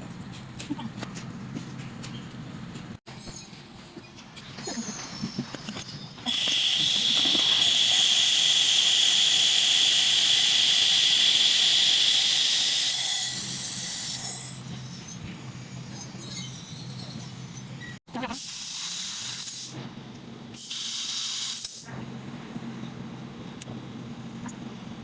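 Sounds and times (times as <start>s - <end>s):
laser welder hiss and whine: 5.1s - 14.9s, 18.4s - 19.8s, 20.5s - 22.0s.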